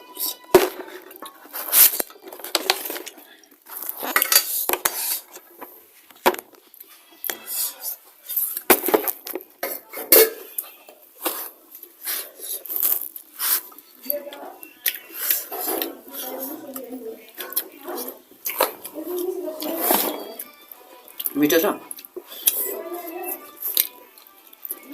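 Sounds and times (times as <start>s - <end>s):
spoons scraping plates: 3.7s - 5.4s, 9.6s - 12.6s, 13.4s - 16.7s, 17.4s - 21.3s, 22.2s - 24.1s.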